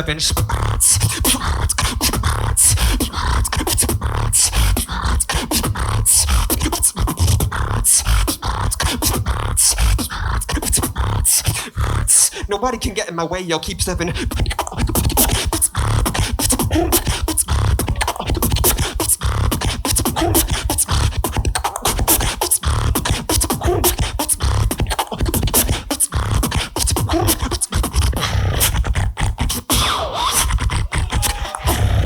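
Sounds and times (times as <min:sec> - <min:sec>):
beatboxing: 0:00.0 - 0:32.0.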